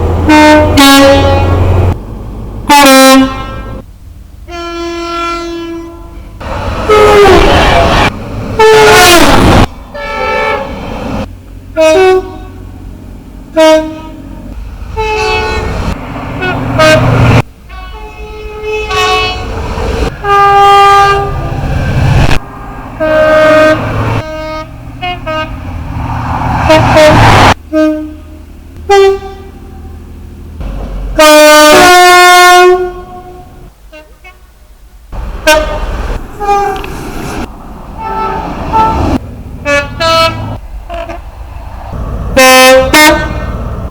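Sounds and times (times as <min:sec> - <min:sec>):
train running noise: 0:00.0 - 0:43.9
train two-tone horn blasts: 0:00.2 - 0:02.0, 0:02.7 - 0:03.8, 0:04.5 - 0:10.8, 0:11.7 - 0:12.8, 0:13.5 - 0:22.4, 0:23.0 - 0:25.7, 0:26.6 - 0:30.0, 0:31.2 - 0:34.6, 0:35.4 - 0:36.9, 0:38.0 - 0:41.2, 0:42.3 - 0:43.7.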